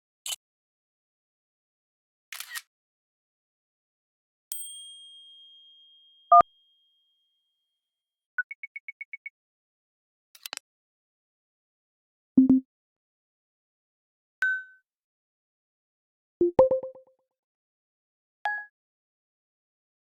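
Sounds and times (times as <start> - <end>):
high ding: 4.6 - 6.5
two-tone beep: 8.4 - 9.3, 16.4 - 17.0
click: 10.4 - 10.6.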